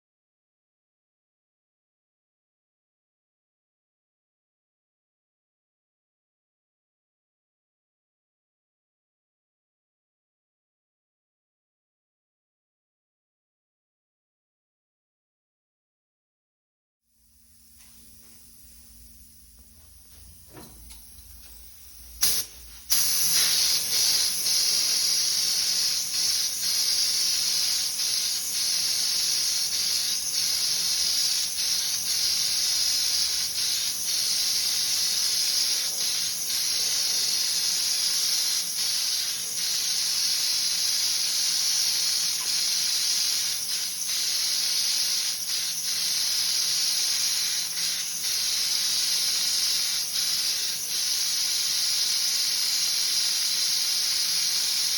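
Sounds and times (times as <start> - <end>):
paint spray gun hissing: 17.2 - 54.9.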